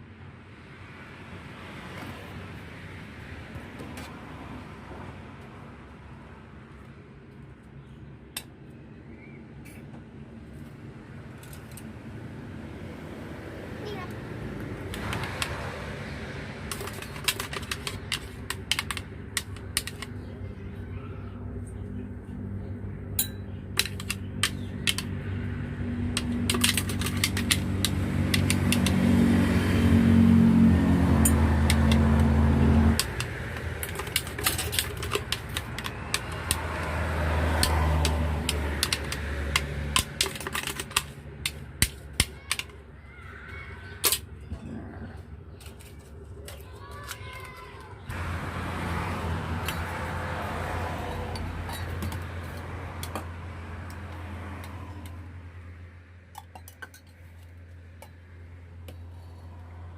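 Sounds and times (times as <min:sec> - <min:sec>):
rapid clicking and clattering: 0:16.7 - 0:20.2, 0:26.1 - 0:29.0, 0:33.0 - 0:36.7.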